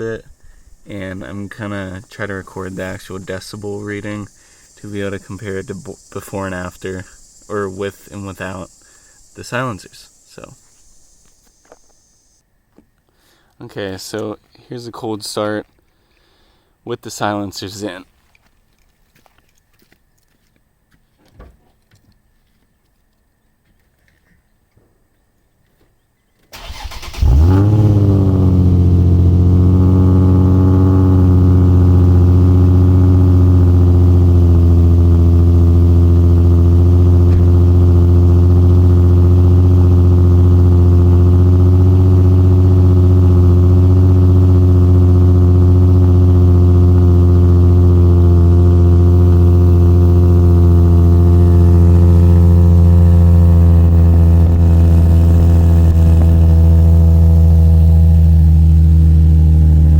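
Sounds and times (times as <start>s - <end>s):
car engine cold idle: 0.0s - 12.4s, 26.5s - 59.9s.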